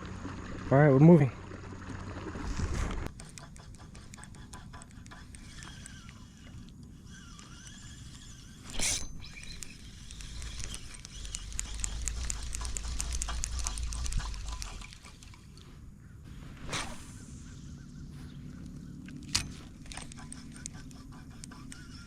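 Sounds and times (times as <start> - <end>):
small clicks: 3.0 - 15.4, 18.5 - 22.0.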